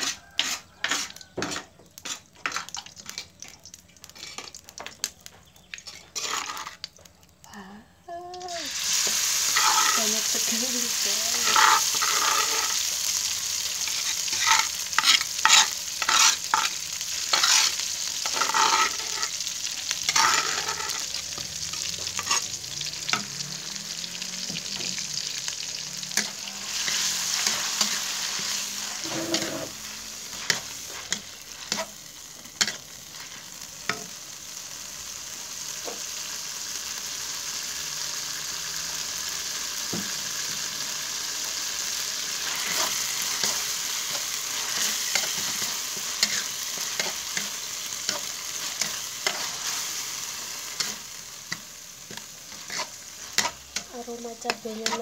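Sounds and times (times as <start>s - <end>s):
spatula scraping and knocking pan: 0.0s - 3.2s, 11.4s - 12.8s, 13.9s - 22.5s, 26.1s - 34.1s, 50.7s - 55.0s
chili paste sizzling in oil: 0.0s - 55.0s.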